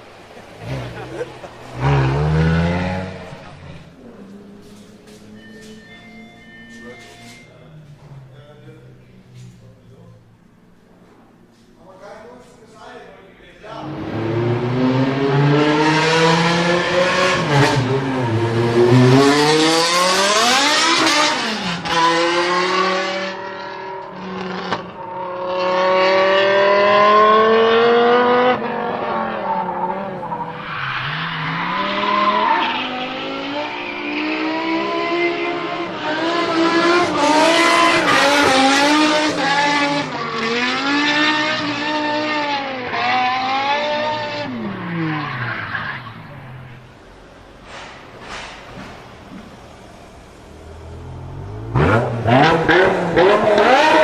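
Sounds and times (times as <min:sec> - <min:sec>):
car engine revving hard: 0:00.0 - 0:03.9, 0:13.8 - 0:30.2, 0:31.2 - 0:46.6, 0:50.4 - 0:54.0.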